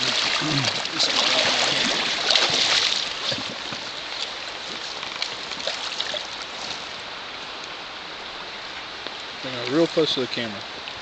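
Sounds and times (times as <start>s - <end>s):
small splashes and drips: 0.0s - 7.0s
stream water running: 0.0s - 11.0s.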